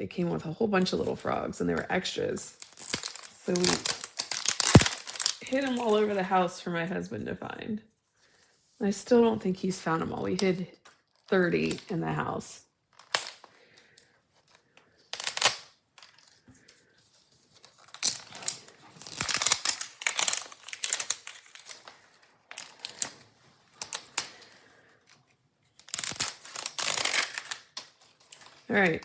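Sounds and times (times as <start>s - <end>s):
plastic wrapping crinkling and tearing: 2.4s - 6.2s, 12.9s - 29.0s.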